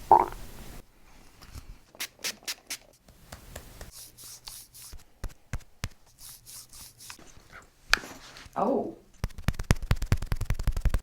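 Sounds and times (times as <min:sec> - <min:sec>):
hands rubbing on clothing: 0:02.0 - 0:05.0, 0:06.1 - 0:08.6.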